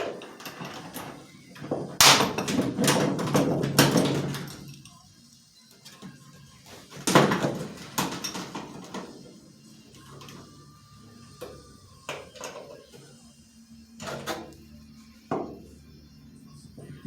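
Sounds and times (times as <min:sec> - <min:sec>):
tools and metal parts clunking: 0:00.0 - 0:05.0, 0:06.9 - 0:09.3, 0:11.4 - 0:13.0, 0:14.0 - 0:14.6.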